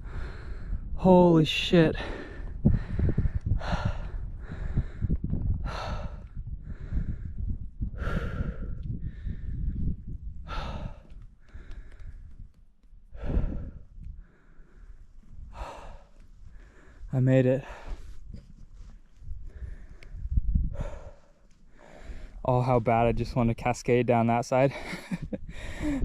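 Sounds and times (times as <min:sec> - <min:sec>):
person breathing hard: 0:00.0 - 0:01.0, 0:02.0 - 0:12.4, 0:13.1 - 0:18.4, 0:19.4 - 0:22.4, 0:25.4 - 0:26.0.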